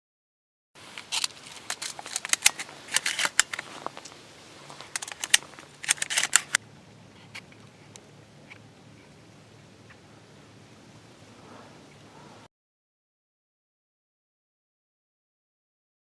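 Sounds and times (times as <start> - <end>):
clicks and rustles of handling: 0.8 - 9.2
faint low hum: 0.8 - 12.5
steady hiss: 0.8 - 12.5.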